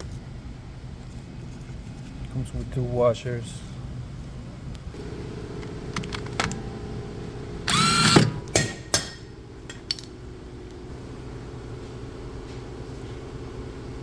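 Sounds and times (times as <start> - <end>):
steady low hum: 0.0 - 14.0
small tool whirring: 7.7 - 8.8.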